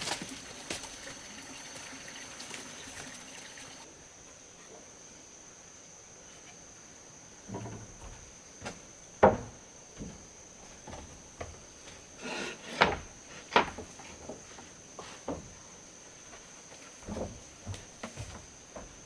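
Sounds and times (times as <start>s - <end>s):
sharp knocks and clatters: 7.5s - 12.0s, 12.8s - 14.6s.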